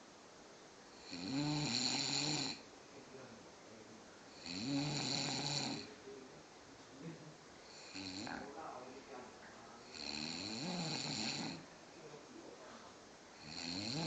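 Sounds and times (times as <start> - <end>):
man snoring: 1.0 - 2.6, 4.4 - 6.0, 7.7 - 8.4, 9.8 - 11.6, 13.4 - 14.0.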